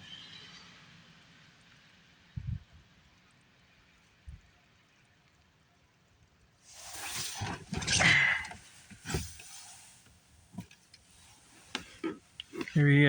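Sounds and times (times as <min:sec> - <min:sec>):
rustling on microphone: 0:06.7 - 0:13.0.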